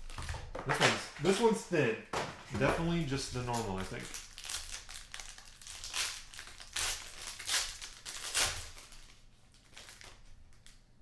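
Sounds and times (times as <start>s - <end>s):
foil wrapper crinkling: 2.7s - 10.9s.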